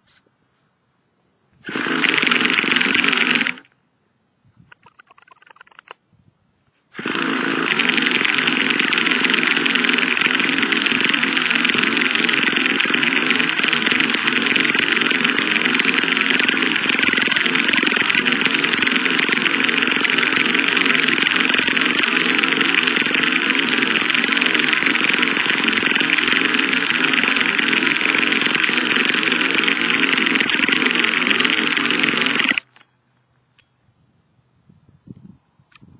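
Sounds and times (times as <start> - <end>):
electric starter spinning engine: 1.6 - 3.7, 6.9 - 32.8.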